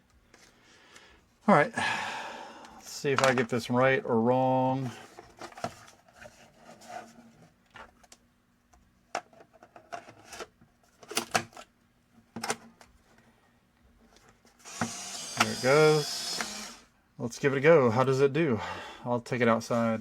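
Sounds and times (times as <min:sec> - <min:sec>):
camera motor whir: 0:14.7 - 0:16.8.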